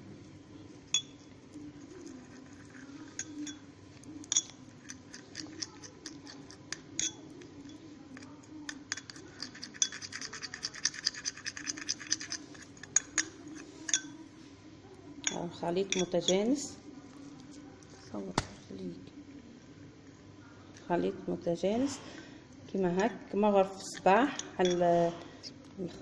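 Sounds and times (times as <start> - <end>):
spoon stirring thick paste: 0.7 - 14.3, 15.2 - 18.5, 23.9 - 25.6
spoon clinking against bowl: 0.9 - 14.2, 15.2 - 16.6, 24.3 - 24.9.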